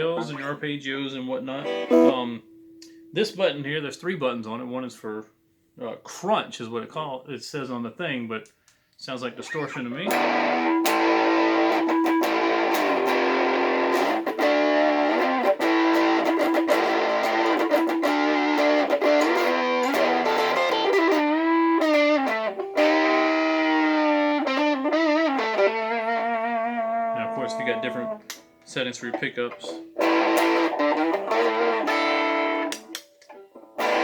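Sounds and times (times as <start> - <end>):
distorted electric guitar: 1.5 - 2.2, 9.4 - 33.0, 33.8 - 34.0.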